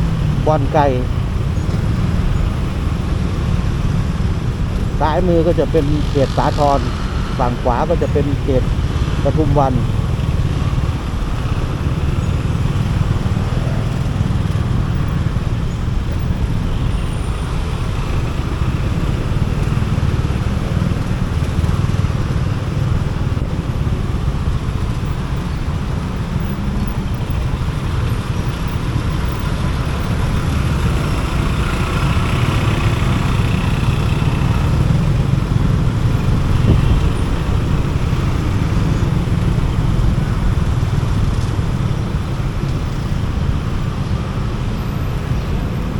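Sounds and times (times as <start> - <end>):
motorcycle engine rumble: 0.0 - 45.9
road noise: 0.0 - 45.9
surrounding traffic: 0.0 - 45.9
wind noise: 33.8 - 45.9.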